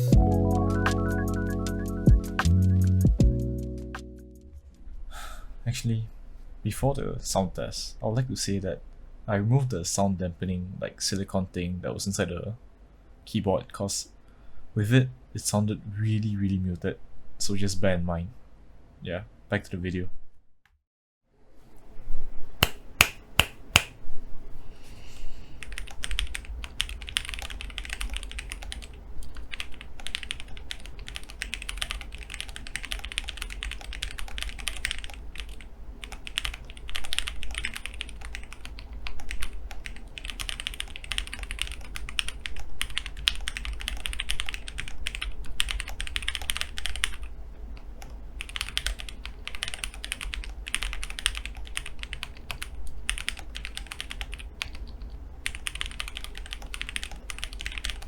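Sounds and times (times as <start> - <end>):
mechanical keyboard typing: 25.6 - 47.3, 48.0 - 58.0.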